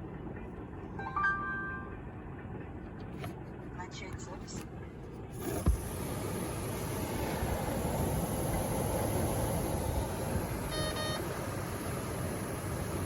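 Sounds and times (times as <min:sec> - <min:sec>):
blower fan running: 0:00.0 - 0:13.0
short electronic beeps: 0:10.7 - 0:11.2.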